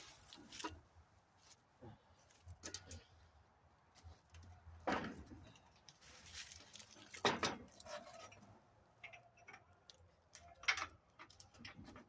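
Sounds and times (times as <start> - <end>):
metal parts and tools clicking: 9.0 - 12.0.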